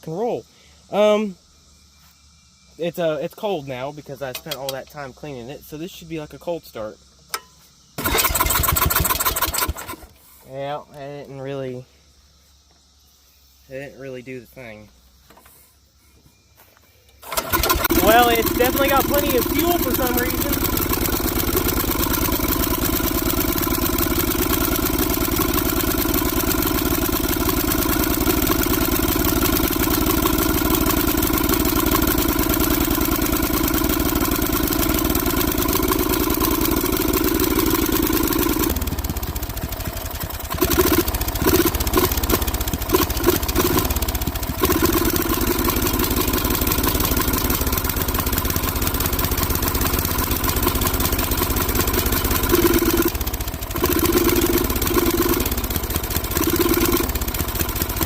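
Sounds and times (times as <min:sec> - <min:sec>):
lawnmower engine running: 0:08.0 - 0:11.0, 0:17.2 - 0:58.0.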